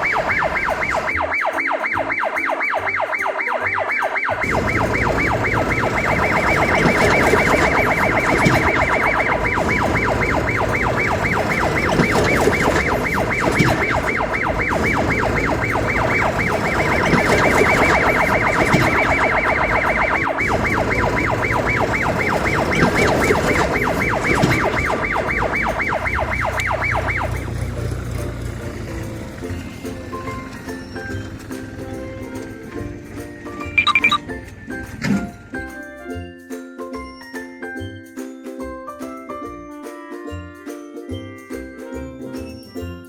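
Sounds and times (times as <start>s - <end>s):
electronic siren warbling: 0.0s - 27.7s, 33.6s - 34.4s
vehicle rumbling: 4.3s - 36.0s.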